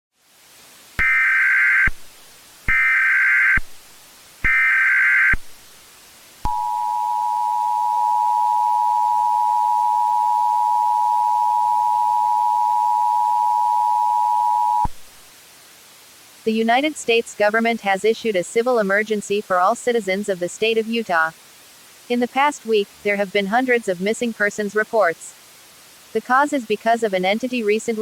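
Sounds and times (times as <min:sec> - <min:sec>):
warbling data tone bursts: 0:01.0 - 0:02.0, 0:02.7 - 0:03.7, 0:04.4 - 0:05.4, 0:06.5 - 0:14.9
steady two-tone attention signal: 0:06.5 - 0:14.9.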